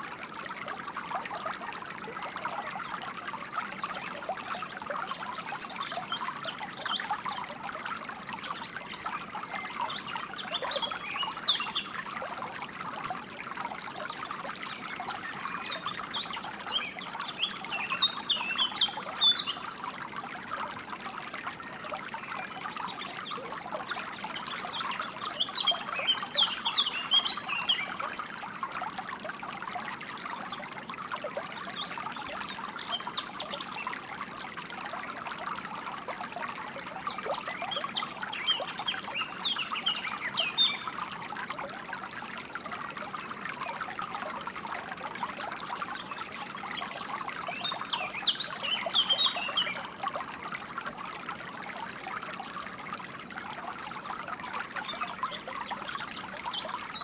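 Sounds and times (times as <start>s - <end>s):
stream trickling and splashing: 0.0s - 57.0s
songbirds chirping: 14.0s - 19.6s, 22.1s - 28.2s, 45.6s - 50.0s.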